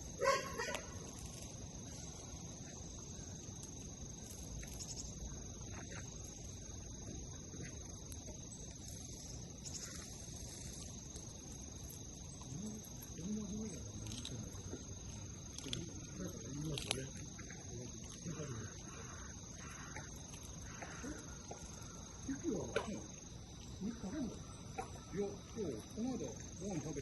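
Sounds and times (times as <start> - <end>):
insects chirring: 0.0 - 27.0.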